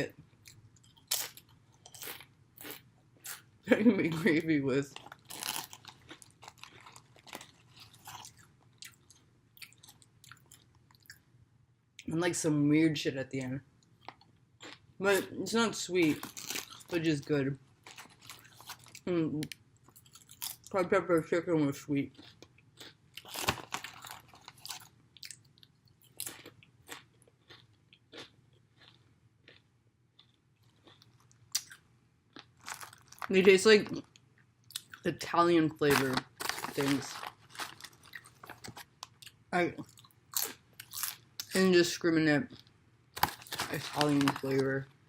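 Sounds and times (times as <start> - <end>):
person chewing chips: 0.4 - 3.5, 4.1 - 11.2, 14.0 - 15.3, 16.0 - 17.1, 17.8 - 20.8, 22.1 - 35.1, 35.8 - 41.6, 42.5 - 44.8.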